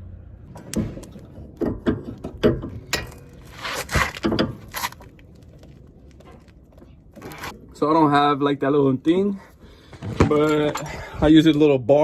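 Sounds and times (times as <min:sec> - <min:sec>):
metal scrape: 0:02.7 - 0:05.0.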